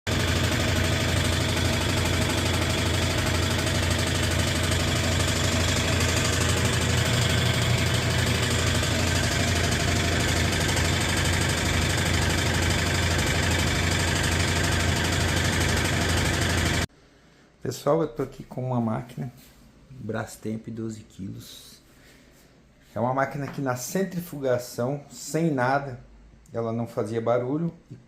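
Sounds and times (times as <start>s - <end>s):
washing machine spinning: 0.1s - 16.9s.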